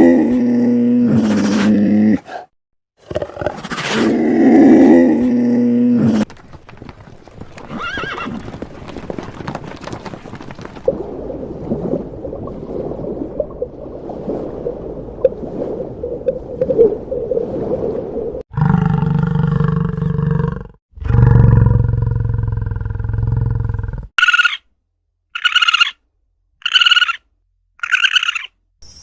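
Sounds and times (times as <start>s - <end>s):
hooves clattering: 6.2s - 10.9s
horse whinnying: 7.6s - 8.6s
animal long steady call: 27.8s - 28.5s.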